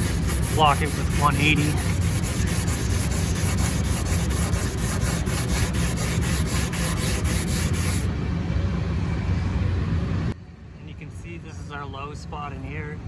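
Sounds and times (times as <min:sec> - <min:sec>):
sandpaper rubbing on metal: 0:00.0 - 0:08.1.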